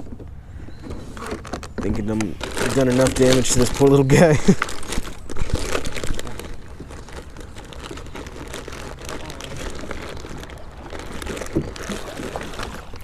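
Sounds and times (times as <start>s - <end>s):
faint rustling and handling: 0.0s - 13.0s.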